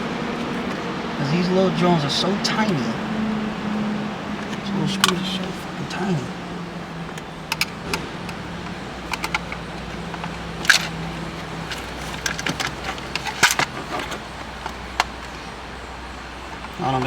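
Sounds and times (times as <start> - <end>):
screwdriver clicking on plastic: 7.1 - 15.2.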